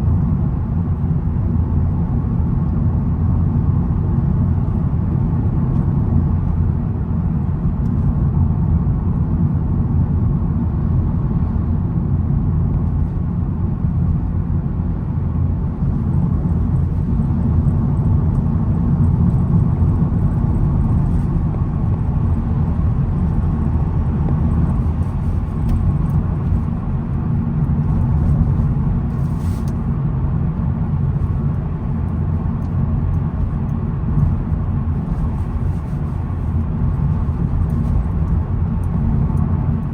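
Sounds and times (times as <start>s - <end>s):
car engine and road rumble: 0.0s - 39.9s.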